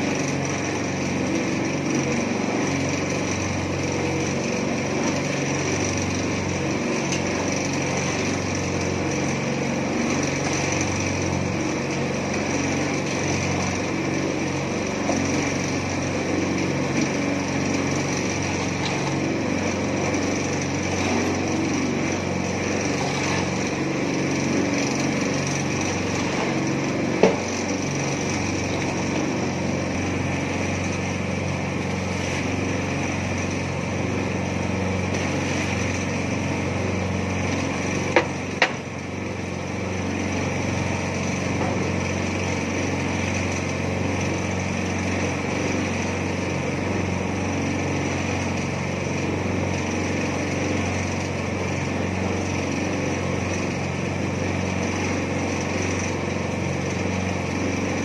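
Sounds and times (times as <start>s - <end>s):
small petrol engine running: 0.0s - 58.0s.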